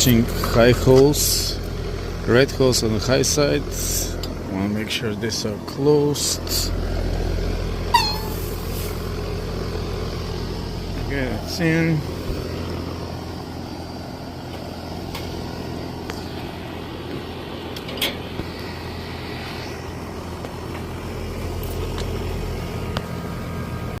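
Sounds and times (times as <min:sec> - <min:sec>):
air conditioner hum: 0:00.0 - 0:24.0.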